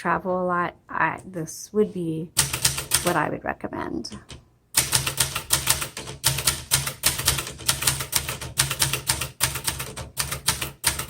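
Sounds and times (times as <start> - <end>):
manual typewriter keys clacking: 2.4 - 3.2, 4.1 - 11.0.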